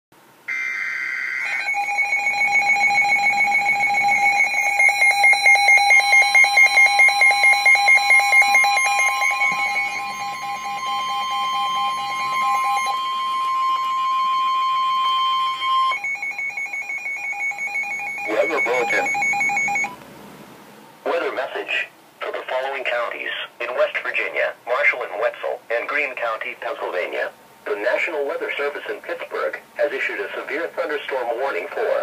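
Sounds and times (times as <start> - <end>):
steady electronic alert tones: 0.5 - 20.0
warbling data tones: 0.5 - 20.0
fast pulsing beep: 1.5 - 20.0.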